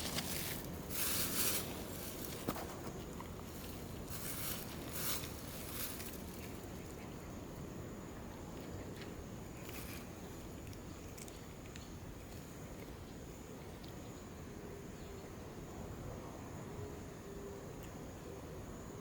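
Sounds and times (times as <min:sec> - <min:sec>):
steady background hiss: 0:00.0 - 0:19.0
cat chewing food: 0:08.4 - 0:13.1.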